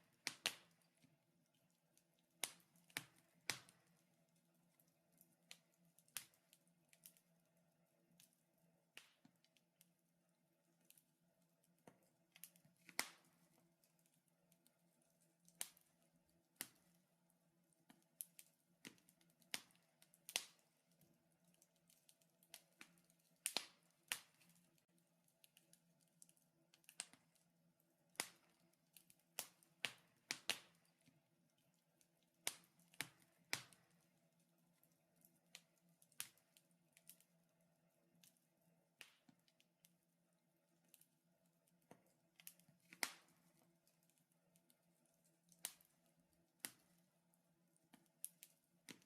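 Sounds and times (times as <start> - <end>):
wood fire crackling: 0.0 - 10.0, 10.6 - 40.0, 40.7 - 49.0.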